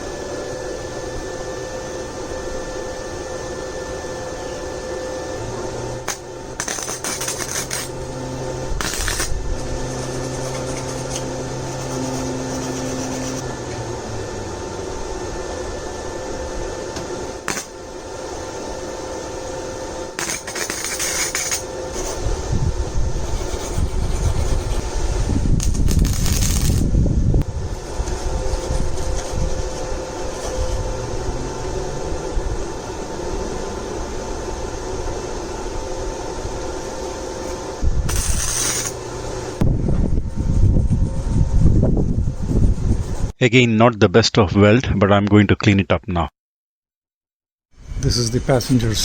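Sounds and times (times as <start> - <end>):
steady welder hum: 0.0 - 43.4
welding arc noise: 5.3 - 13.5, 17.2 - 32.0, 36.2 - 39.6.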